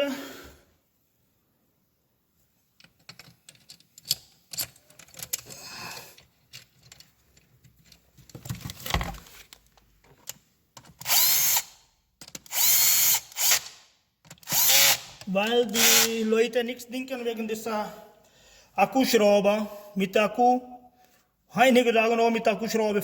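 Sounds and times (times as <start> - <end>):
tools and metal parts clicking: 2.8 - 8.6
cordless drill whirring: 11.0 - 11.7, 12.5 - 13.8, 14.4 - 15.2, 15.8 - 16.1.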